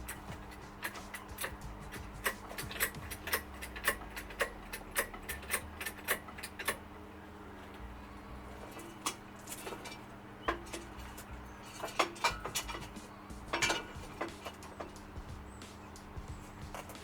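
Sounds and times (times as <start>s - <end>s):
socket ratchet clicking: 0.0s - 6.8s.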